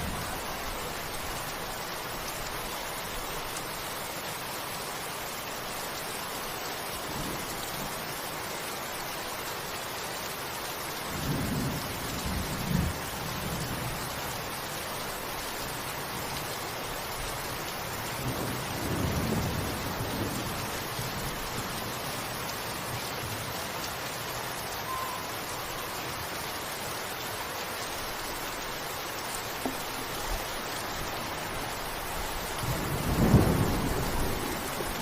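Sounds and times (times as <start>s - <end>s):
steady rain: 0.0s - 35.0s
thunder rumbling: 32.5s - 35.0s.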